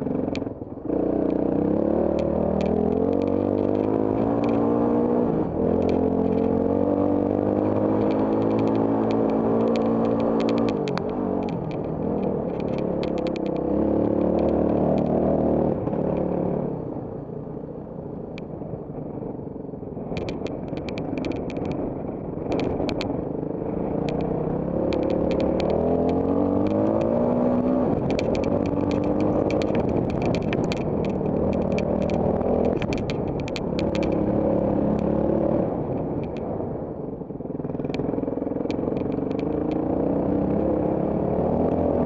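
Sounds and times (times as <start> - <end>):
motorcycle engine revving: 0.0 - 16.9, 20.2 - 36.5, 37.6 - 42.0
stones clicking and rattling: 2.2 - 5.0, 5.7 - 15.5, 20.2 - 21.8, 22.5 - 23.1, 23.9 - 35.2, 37.8 - 40.0.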